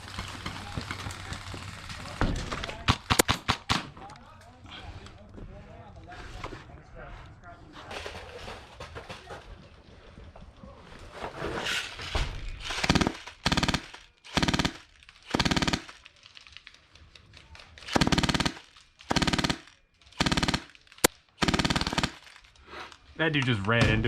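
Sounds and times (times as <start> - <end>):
airsoft gun automatic bursts: 12.7 - 16.0, 17.8 - 22.4.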